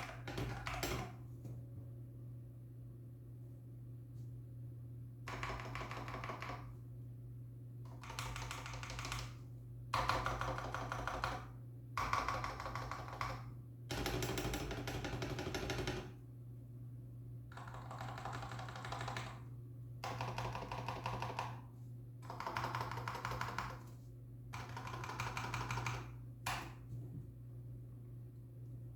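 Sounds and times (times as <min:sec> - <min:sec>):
rapid keyboard typing: 0:00.0 - 0:01.2, 0:05.3 - 0:06.7, 0:07.9 - 0:09.4, 0:10.0 - 0:16.2, 0:17.5 - 0:19.4, 0:20.0 - 0:23.9, 0:24.5 - 0:26.7.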